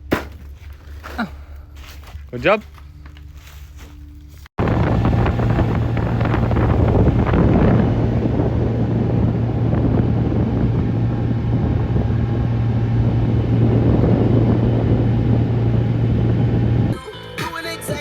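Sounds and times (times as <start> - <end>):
low engine drone: 2.7 - 17.0
wind on microphone: 4.6 - 17.0.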